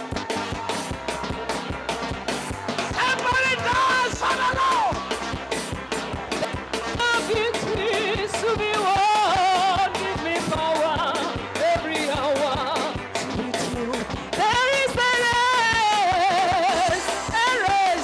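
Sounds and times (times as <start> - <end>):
band with steady drum beat: 0.0 - 18.0
person singing with vibrato: 7.0 - 18.0.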